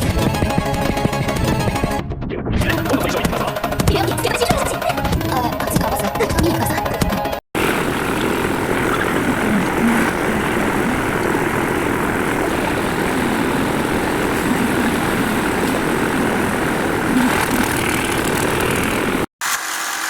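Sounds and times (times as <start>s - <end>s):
machine engine droning: 7.6s - 20.0s.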